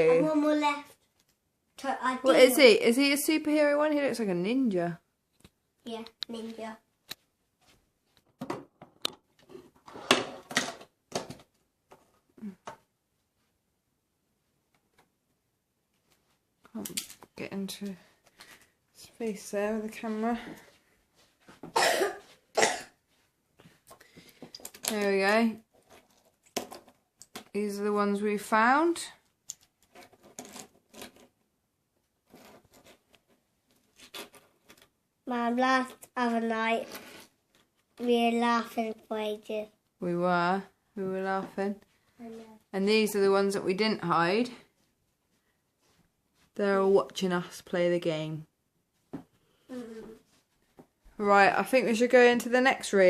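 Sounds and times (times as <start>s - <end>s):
faint rustles and light scrapes: 32.1s - 35.0s.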